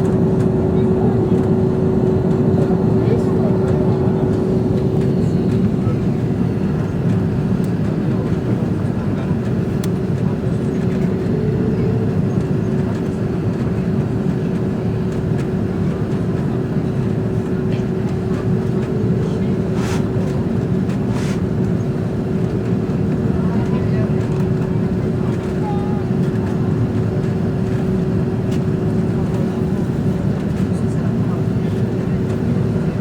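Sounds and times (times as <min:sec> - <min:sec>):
airliner cabin rumble: 0:00.0 - 0:33.0.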